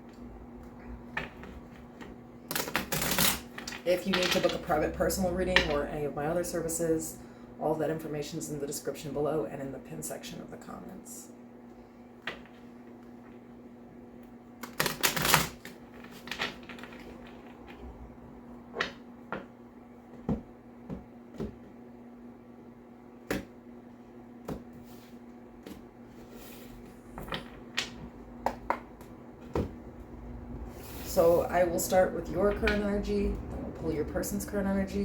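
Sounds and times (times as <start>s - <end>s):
cards being shuffled: 14.6s - 17.9s.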